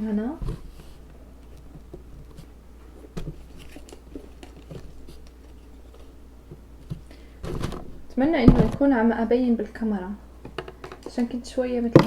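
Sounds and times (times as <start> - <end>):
sneakers handled taps and rustles: 0.2 - 9.1.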